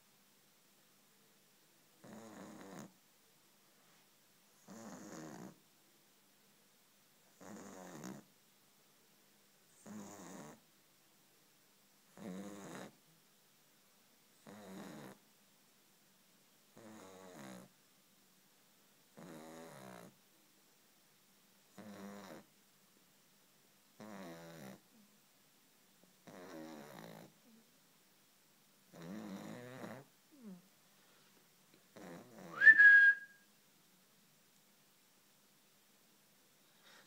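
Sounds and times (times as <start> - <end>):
quiet breaths: 0.0 - 32.6, 33.6 - 37.0
puppy snoring: 2.0 - 3.0, 4.6 - 5.6, 7.3 - 8.3, 9.7 - 10.6, 12.1 - 13.0, 14.4 - 15.2, 16.7 - 17.8, 19.1 - 20.2, 21.7 - 22.5, 24.0 - 24.9, 26.2 - 27.5, 28.9 - 30.6, 31.9 - 33.3.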